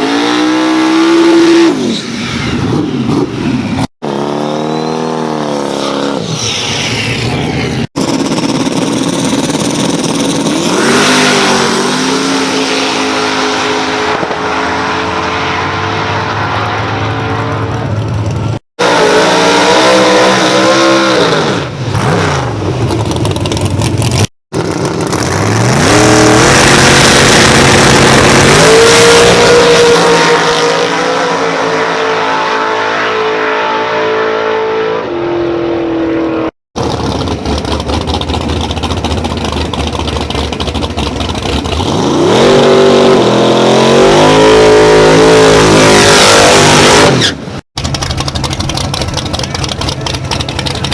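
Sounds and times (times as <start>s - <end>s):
race cars accelerating: 0.0s - 22.5s.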